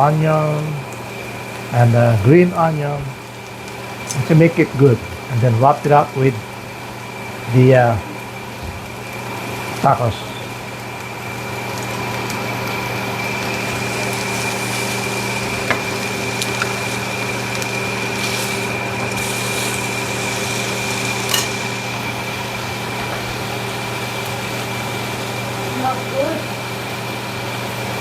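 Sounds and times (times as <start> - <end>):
fan humming: 0.0 - 28.0
utensils or dishes clicking: 21.2 - 21.7.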